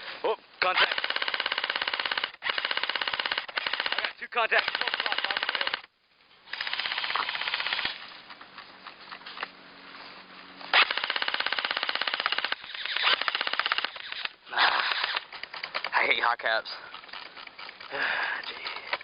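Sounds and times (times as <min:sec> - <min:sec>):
airsoft gun full-auto bursts: 0:00.8 - 0:05.8, 0:06.5 - 0:08.0, 0:10.8 - 0:15.3.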